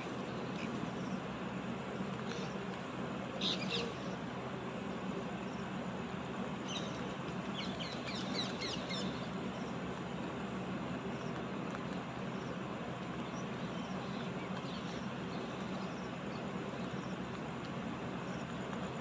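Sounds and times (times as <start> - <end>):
steady background hum: 0.0 - 19.0
bird chirping: 6.6 - 9.8.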